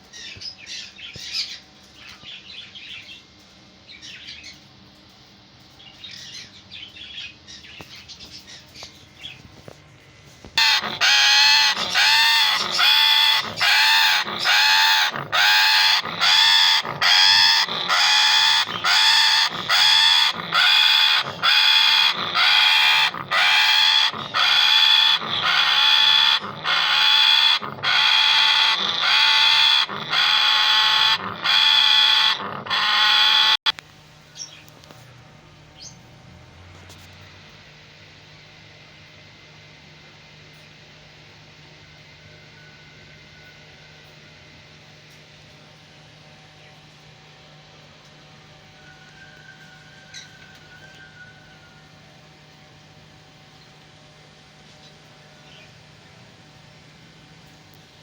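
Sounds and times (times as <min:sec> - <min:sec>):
parrot repeated calls: 0:10.6 - 0:33.7.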